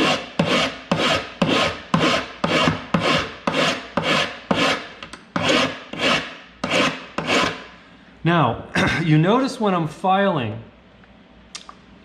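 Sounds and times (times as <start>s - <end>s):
hand file rasping on metal: 0.0s - 7.7s.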